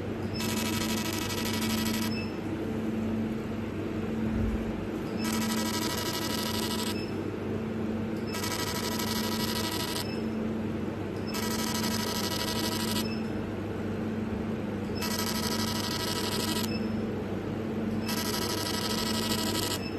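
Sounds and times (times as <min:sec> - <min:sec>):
steady low hum: 0:00.0 - 0:19.9
tattoo device buzzing: 0:00.4 - 0:02.2, 0:05.2 - 0:07.1, 0:08.3 - 0:10.2, 0:11.3 - 0:13.0, 0:15.0 - 0:16.8, 0:18.0 - 0:19.8.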